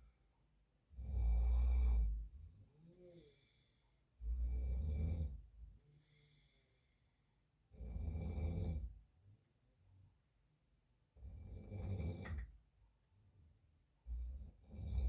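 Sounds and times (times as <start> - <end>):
faint breathing: 2.9 - 4.8, 5.9 - 7.3
man snoring: 4.3 - 5.4, 7.8 - 8.9, 11.4 - 12.4.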